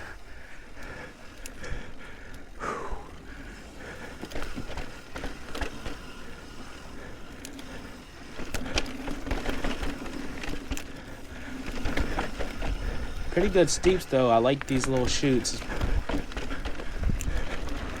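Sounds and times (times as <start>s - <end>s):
bike knocking and rattling: 0.0s - 18.0s
tyre and wind rumble: 0.0s - 18.0s.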